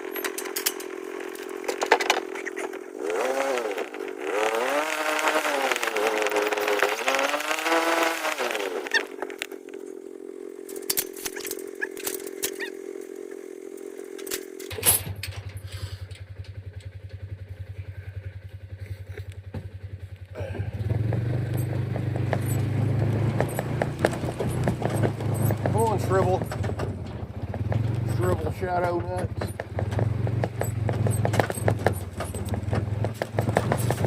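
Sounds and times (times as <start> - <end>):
clicks and clatter: 0.0 - 4.2, 10.6 - 12.7, 14.1 - 17.4, 21.0 - 34.0
engine revving: 0.0 - 34.0
low hum: 0.0 - 34.0.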